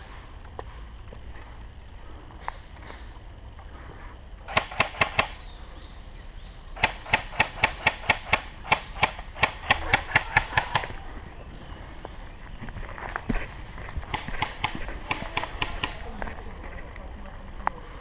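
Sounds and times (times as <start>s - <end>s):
airsoft gun shots: 4.5s - 5.4s, 6.8s - 11.0s, 14.1s - 16.0s.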